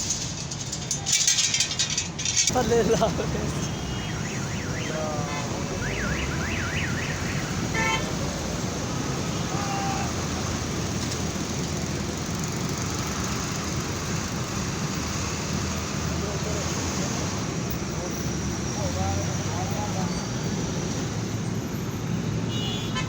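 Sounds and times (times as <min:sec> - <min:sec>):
low rumble of engines and traffic: 0:00.0 - 0:23.0
warbling electronic alarm: 0:03.8 - 0:07.8.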